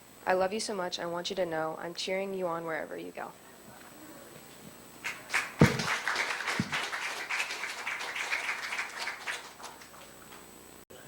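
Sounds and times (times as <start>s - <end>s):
congregation applauding: 5.0s - 10.5s.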